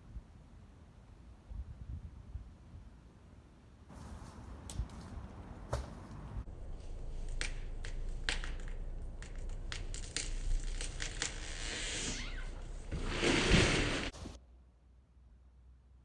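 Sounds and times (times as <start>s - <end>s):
branches crashing into ground: 3.9s - 11.7s
tree trunk cracking: 4.2s - 14.3s.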